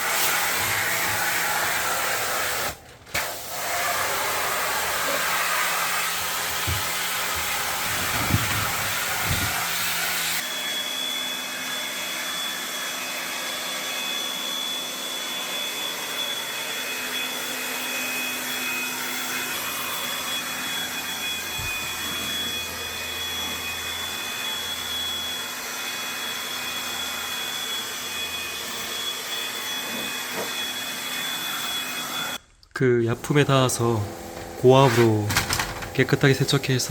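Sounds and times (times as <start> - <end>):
pressure washer spraying: 0.0 - 10.5, 33.2 - 35.5.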